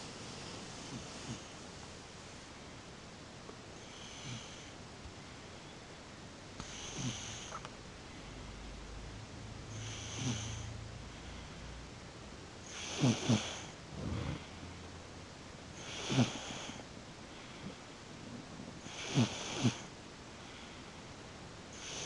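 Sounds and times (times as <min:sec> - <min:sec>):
child snoring: 0:03.9 - 0:04.7, 0:06.6 - 0:07.6, 0:09.7 - 0:10.7, 0:12.7 - 0:14.8, 0:15.8 - 0:16.8, 0:18.8 - 0:19.9, 0:21.8 - 0:22.0.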